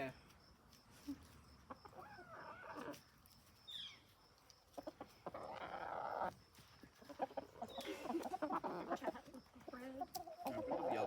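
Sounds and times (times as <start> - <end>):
chickens clucking: 1.0 - 11.0.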